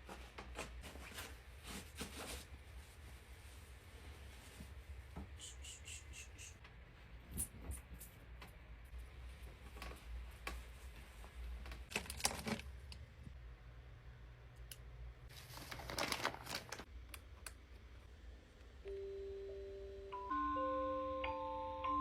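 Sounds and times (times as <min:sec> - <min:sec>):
rustling: 0:15.3 - 0:16.9
low steady hum: 0:16.8 - 0:22.0
chiming bell-like melody: 0:18.9 - 0:22.0.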